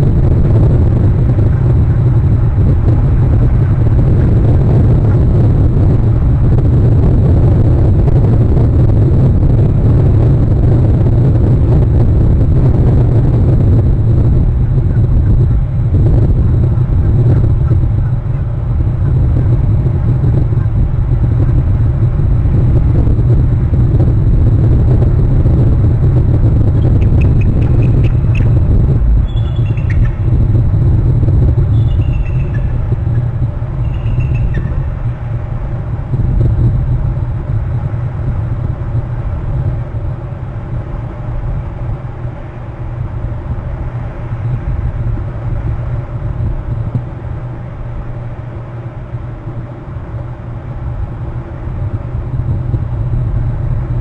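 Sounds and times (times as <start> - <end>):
steady low rumble: 0.0 - 54.0
eagle high piping calls: 26.8 - 28.6, 29.2 - 30.4, 31.8 - 32.8, 33.8 - 34.9.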